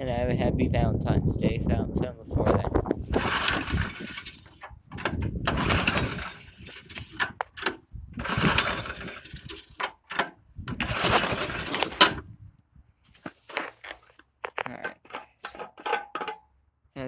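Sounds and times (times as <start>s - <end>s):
light clicks and rattles: 2.5s - 12.2s, 13.2s - 16.4s
snowblower engine cranking: 2.5s - 12.3s, 13.2s - 14.2s, 14.8s - 16.4s.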